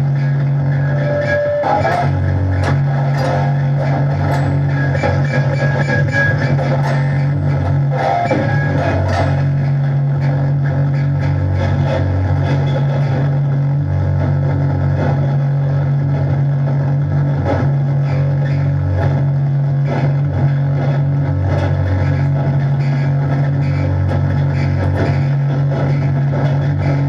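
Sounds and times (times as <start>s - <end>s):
loud low drone: 0.0s - 27.0s.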